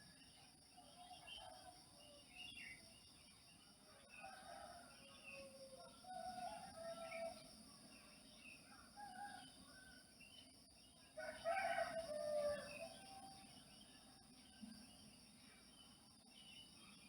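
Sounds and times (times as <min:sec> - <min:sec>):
rooster crowing: 0:11.2 - 0:12.9.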